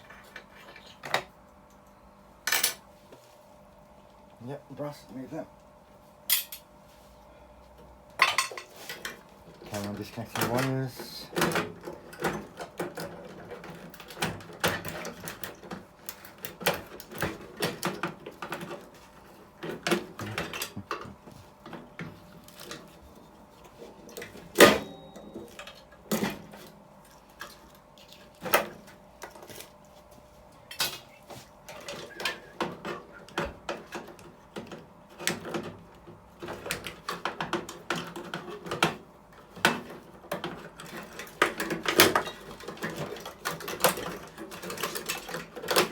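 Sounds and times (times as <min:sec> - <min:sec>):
clicks and knocks of metal and plastic: 0:08.2 - 0:23.0, 0:31.7 - 0:45.9.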